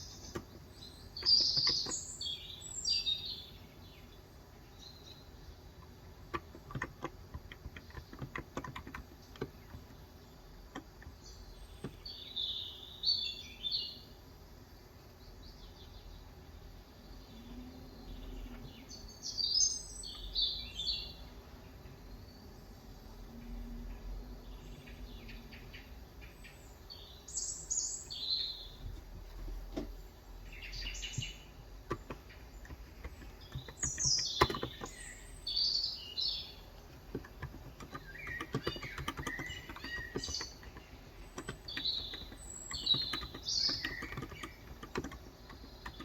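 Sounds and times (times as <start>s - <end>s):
birds chirping: 0.0s - 22.8s, 23.9s - 46.0s
keyboard typing clicks: 0.1s - 2.1s, 6.2s - 10.0s, 31.1s - 35.2s, 36.9s - 46.0s.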